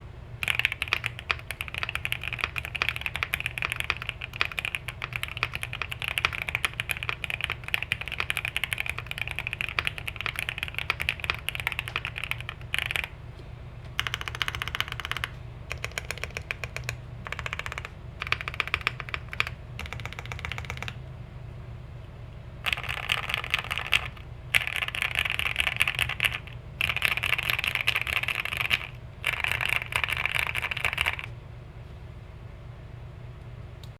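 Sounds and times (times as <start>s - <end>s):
fast typing on mechanical keyboard: 0.4s - 13.2s, 14.0s - 21.0s, 22.6s - 31.3s.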